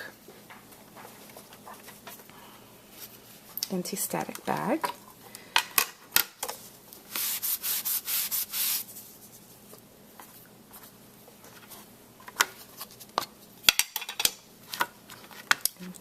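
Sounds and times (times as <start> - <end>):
bag rubbing on cardstock: 7.1 - 8.9.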